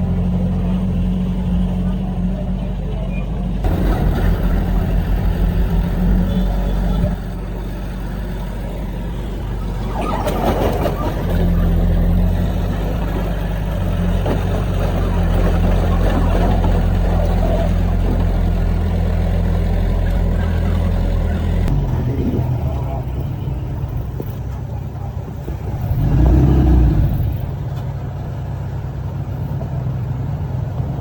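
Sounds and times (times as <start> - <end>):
diesel engine under load: 0.0 - 31.0
rattling and scraping: 9.3 - 22.0.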